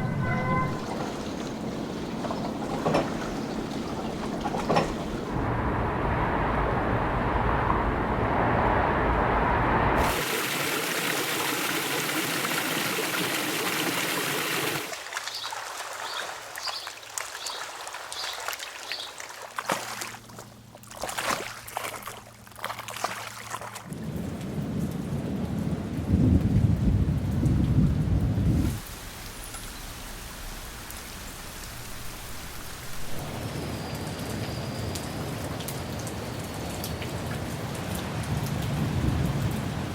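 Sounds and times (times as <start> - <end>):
low rumble: 0.0 - 1.5, 5.2 - 10.1
thunder rumbling: 0.0 - 10.3, 23.9 - 28.8, 37.1 - 39.9
rain: 0.0 - 19.6, 23.6 - 39.9.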